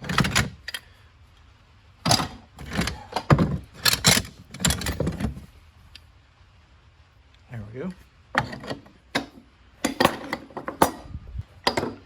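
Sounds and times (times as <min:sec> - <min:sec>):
hardware clattering and rattling: 0:00.0 - 0:00.9, 0:02.0 - 0:05.5, 0:08.3 - 0:12.0.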